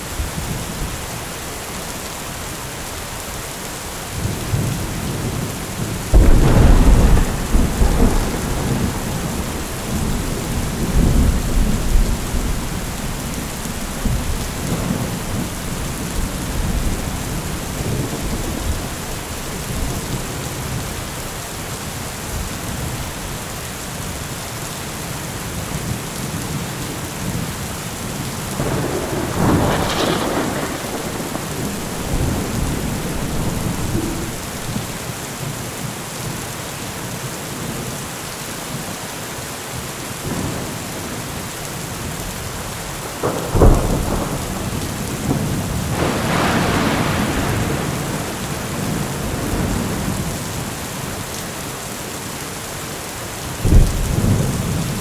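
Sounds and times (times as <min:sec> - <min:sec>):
heavy rain falling: 0:00.0 - 0:55.0
thunder rumbling: 0:04.2 - 0:21.2, 0:28.4 - 0:35.4, 0:42.6 - 0:51.2, 0:53.6 - 0:55.0.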